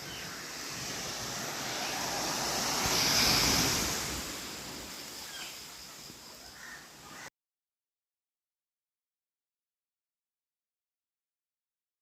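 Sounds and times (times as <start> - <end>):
sea waves washing onto beach: 0.0 - 7.0.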